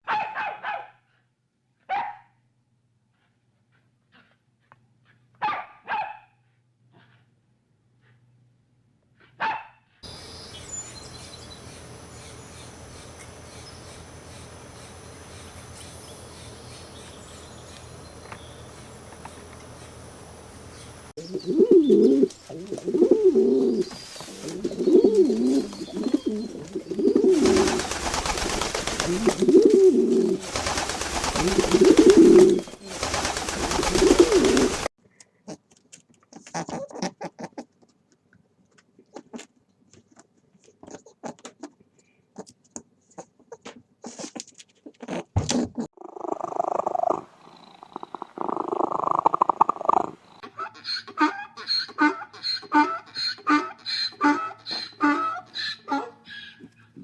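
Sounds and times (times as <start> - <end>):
pigeons cooing: 21.2 - 34.9, 45.9 - 51.3
rustling: 22.1 - 34.9.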